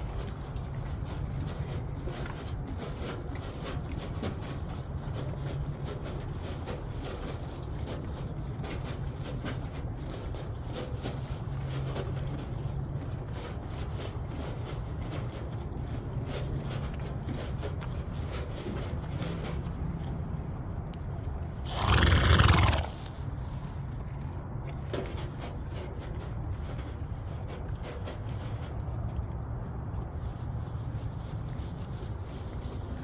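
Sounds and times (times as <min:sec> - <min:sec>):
constant low rumble: 0:00.0 - 0:33.0
horse chewing hay: 0:21.6 - 0:23.4.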